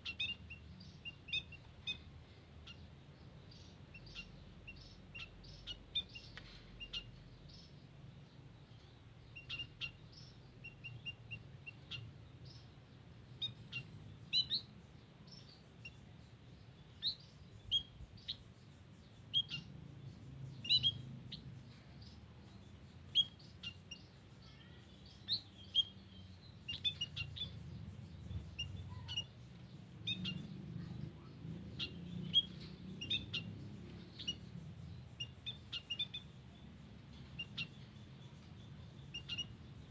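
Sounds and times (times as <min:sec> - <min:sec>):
birds chirping: 0:00.0 - 0:39.9
low background rumble: 0:25.0 - 0:39.9.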